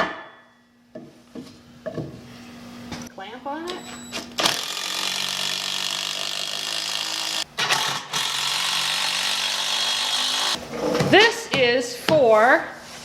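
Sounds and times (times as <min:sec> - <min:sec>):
power drill running: 0:04.4 - 0:10.6.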